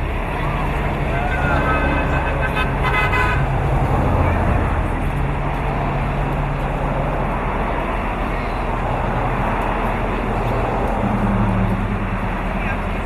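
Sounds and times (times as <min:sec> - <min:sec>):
crowd chatter: 0:00.0 - 0:13.0
diesel engine idling: 0:00.0 - 0:13.0
fire engine horn toot: 0:01.3 - 0:03.6.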